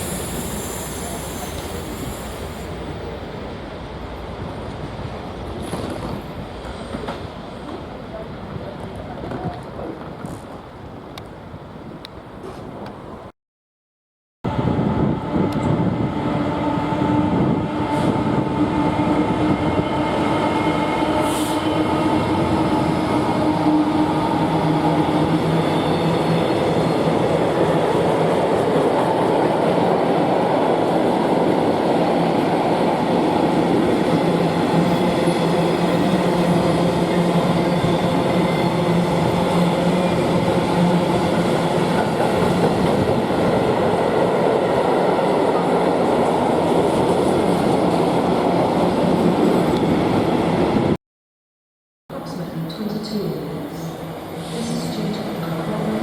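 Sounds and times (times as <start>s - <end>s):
train wheels rumbling on rail: 0.0s - 11.3s, 14.5s - 50.9s.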